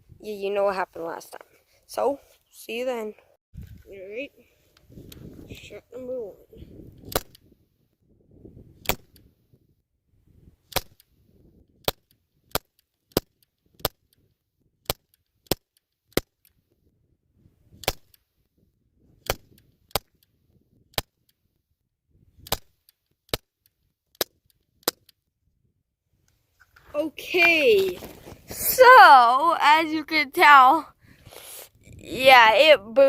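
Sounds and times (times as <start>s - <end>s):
handling rustle: 26.3s - 28.7s.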